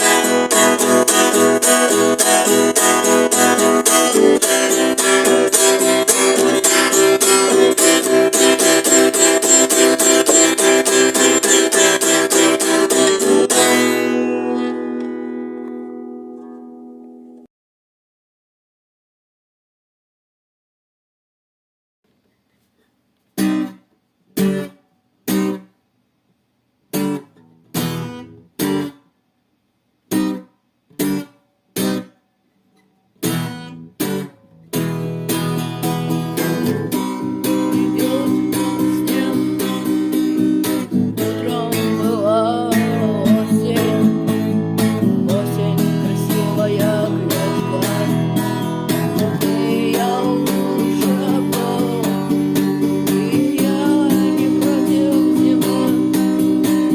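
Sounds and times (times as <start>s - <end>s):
rock band playing: 0.0s - 13.6s
lead guitar melody: 0.0s - 17.5s, 26.9s - 29.0s, 33.2s - 56.9s
strummed guitar chords: 0.0s - 17.5s, 23.4s - 25.7s, 26.9s - 29.1s, 30.1s - 32.2s, 33.2s - 56.9s.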